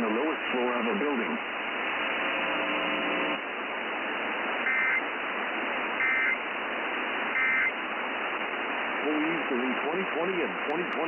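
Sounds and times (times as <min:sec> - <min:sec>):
radio static hiss: 0:00.0 - 0:11.0
buzzing tone: 0:04.6 - 0:05.0, 0:06.0 - 0:06.4, 0:07.3 - 0:07.8
two-tone digital data bursts: 0:04.7 - 0:05.0, 0:06.0 - 0:06.4, 0:07.3 - 0:07.8.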